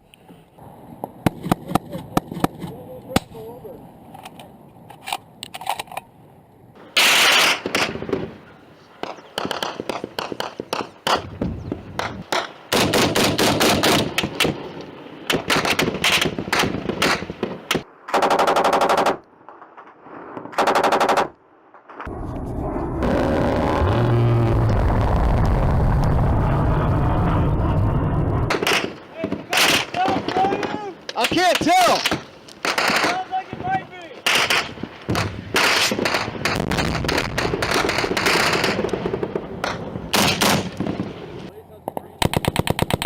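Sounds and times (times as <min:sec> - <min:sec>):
automatic gunfire: 0:12.3 - 0:14.6, 0:18.1 - 0:19.2, 0:20.5 - 0:21.3, 0:39.6 - 0:40.8, 0:42.2 - 0:43.0
loud rumbling noise: 0:22.1 - 0:28.5.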